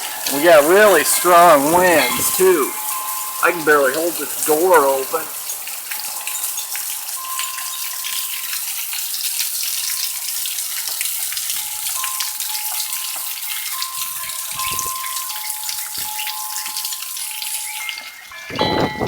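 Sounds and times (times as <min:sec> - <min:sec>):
heavy rain pouring: 0:00.0 - 0:19.0.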